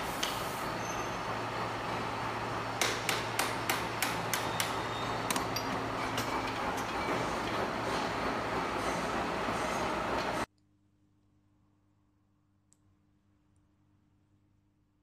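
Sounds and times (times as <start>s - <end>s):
workshop machinery hum: 0.0s - 10.5s.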